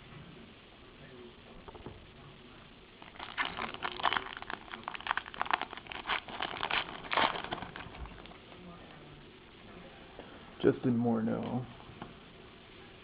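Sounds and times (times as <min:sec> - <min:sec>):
card wrapper rustling and crinkling: 0:03.0 - 0:08.4.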